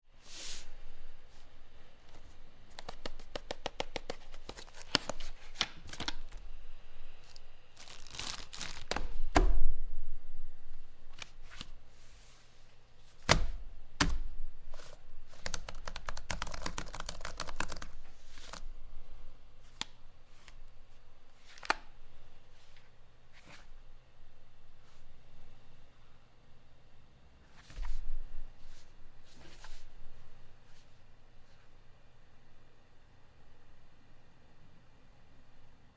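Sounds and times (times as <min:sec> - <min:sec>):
packaging tearing and rustling: 0:02.7 - 0:06.4, 0:07.2 - 0:09.3.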